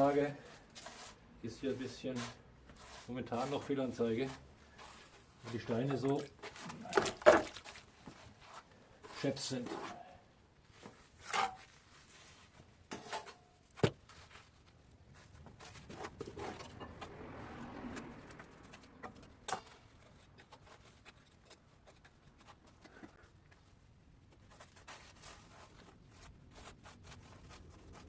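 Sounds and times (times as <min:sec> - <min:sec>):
mortar scraping: 0:00.0 - 0:17.0, 0:24.4 - 0:28.0.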